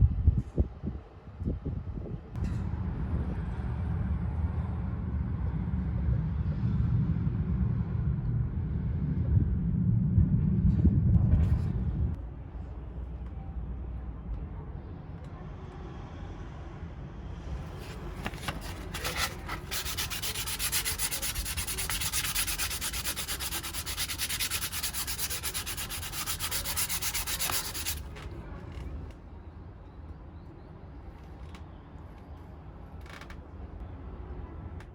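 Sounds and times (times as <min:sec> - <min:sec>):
sandpaper scraping on wood: 0:17.8 - 0:28.1.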